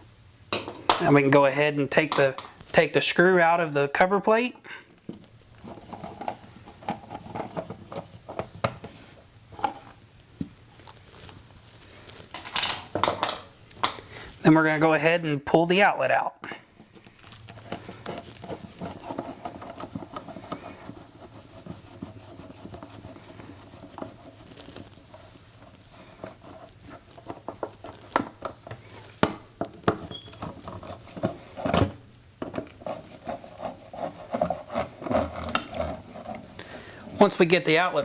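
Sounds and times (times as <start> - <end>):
screwdriver scraping: 32.8 - 36.9.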